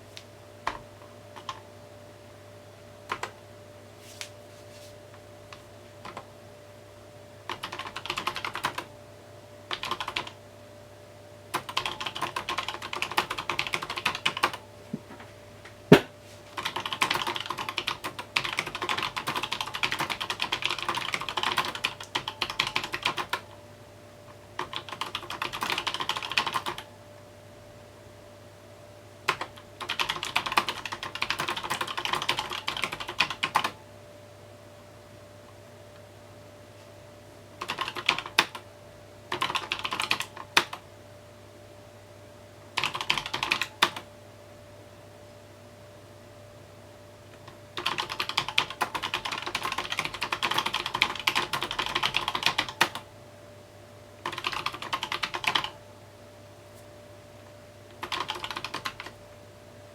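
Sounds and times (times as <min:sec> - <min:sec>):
typing on mechanical keyboard: 0:01.4 - 0:01.6, 0:07.5 - 0:08.9, 0:09.7 - 0:10.4, 0:11.6 - 0:14.6, 0:16.6 - 0:23.4, 0:24.6 - 0:26.9, 0:29.3 - 0:33.8, 0:37.6 - 0:38.6, 0:39.3 - 0:40.8, 0:42.8 - 0:44.0, 0:47.4 - 0:53.0, 0:54.2 - 0:55.8, 0:58.0 - 0:59.2.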